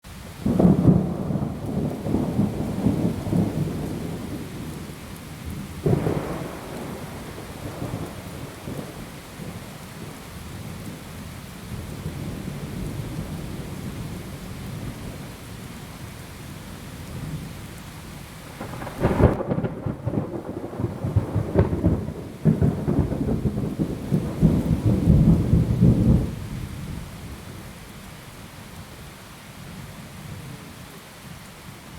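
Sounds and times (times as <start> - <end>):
rain hissing: 0.1 - 31.9
rolling thunder: 0.4 - 9.6, 18.5 - 26.7
sharp thunderclap: 5.8 - 9.0, 18.6 - 26.4.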